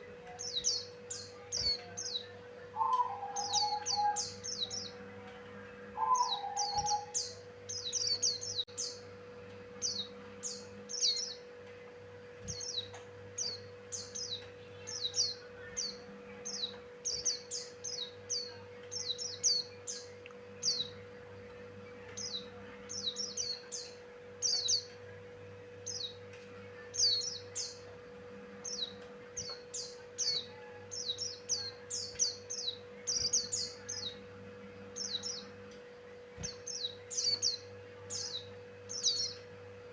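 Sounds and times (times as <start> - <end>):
steady low hum: 0.0 - 39.9
bird singing high chirps: 0.2 - 5.0, 5.9 - 9.0, 12.4 - 21.0, 36.4 - 39.5.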